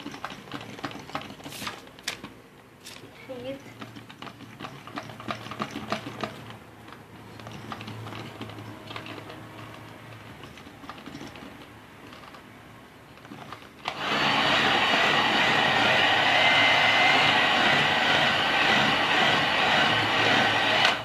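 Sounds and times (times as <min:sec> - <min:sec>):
utensils clicking on mixing bowl: 0:03.7 - 0:12.5
electric mixer running: 0:13.8 - 0:21.0.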